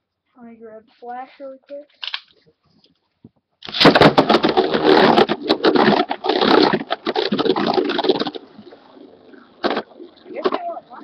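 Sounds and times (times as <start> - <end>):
spinning top buzzing with clicks: 3.7 - 11.0.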